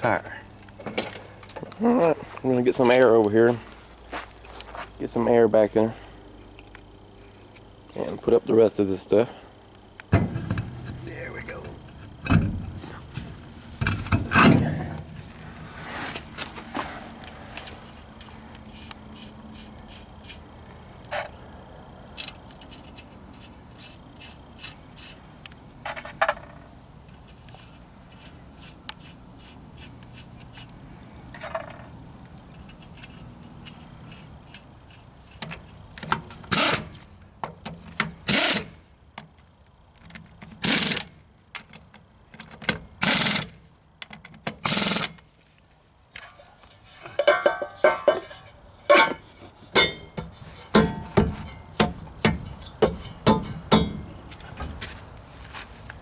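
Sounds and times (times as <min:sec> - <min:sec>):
low steady hum: 0:00.0 - 0:43.4
tools clicking and scraping: 0:17.2 - 0:20.4, 0:22.1 - 0:26.5, 0:27.1 - 0:45.4, 0:46.1 - 0:54.8.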